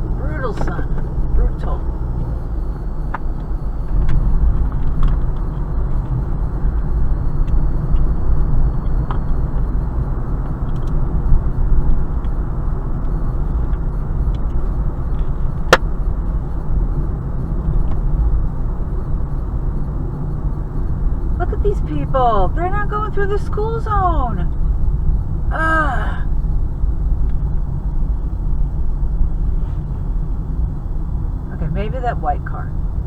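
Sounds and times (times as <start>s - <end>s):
car road and engine rumble: 0.0s - 33.0s.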